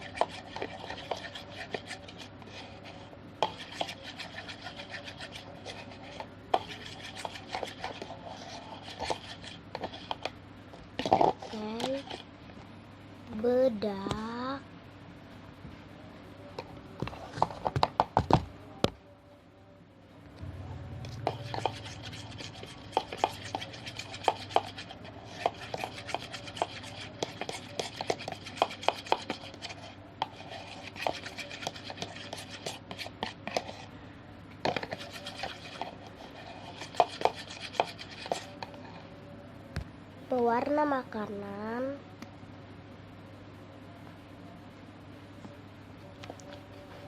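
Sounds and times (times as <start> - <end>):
spoon stirring slime: 0.0 - 10.4, 11.0 - 12.3, 21.1 - 33.9, 34.6 - 39.0.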